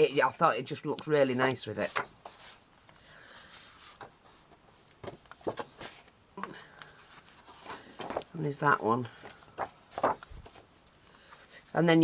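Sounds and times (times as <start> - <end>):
paper rustling: 1.4 - 6.2, 6.8 - 11.6.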